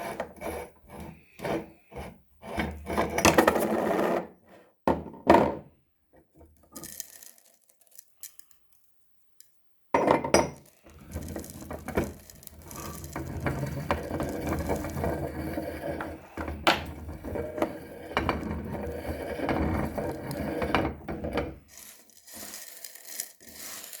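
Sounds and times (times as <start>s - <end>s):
meat grinder rattling and clicking: 10.9s - 21.0s.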